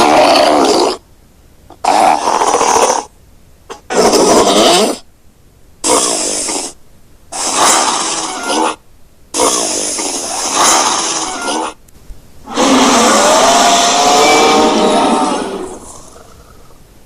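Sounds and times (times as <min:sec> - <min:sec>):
monster vocal calls: 0:00.0 - 0:01.0, 0:07.4 - 0:08.8, 0:09.4 - 0:11.8, 0:12.5 - 0:16.8.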